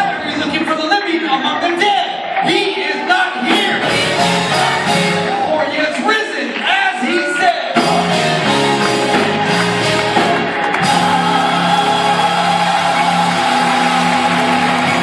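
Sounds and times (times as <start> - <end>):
instrumental accompaniment: 3.5 - 5.6, 7.8 - 15.0
gospel choir singing: 7.8 - 15.0.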